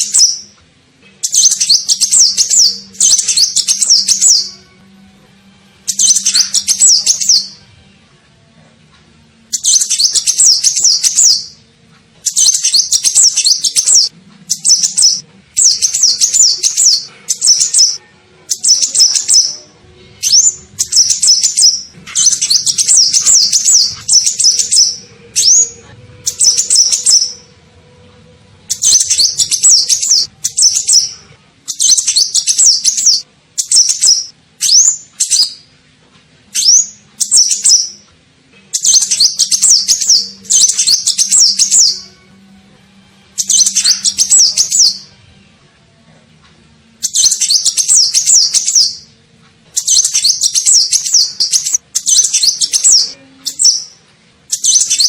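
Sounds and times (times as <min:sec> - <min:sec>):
sunbird twittering chirps: 0:01.2 - 0:04.5, 0:05.9 - 0:07.6, 0:09.6 - 0:11.6, 0:12.3 - 0:19.6, 0:20.2 - 0:27.5, 0:28.7 - 0:31.1, 0:47.1 - 0:49.1.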